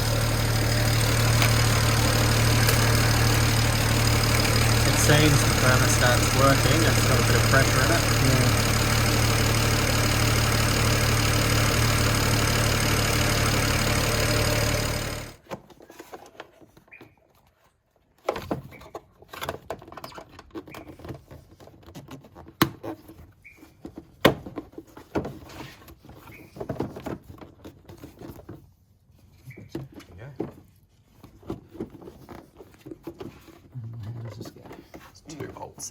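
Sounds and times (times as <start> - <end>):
car engine idling: 0.0 - 15.4.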